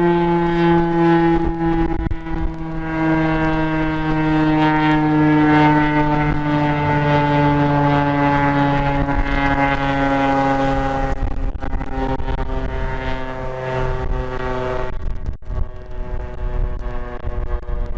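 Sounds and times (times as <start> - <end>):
rotating siren two-note chord: 0.0 - 15.0
wind rumbling on microphone: 0.0 - 17.9.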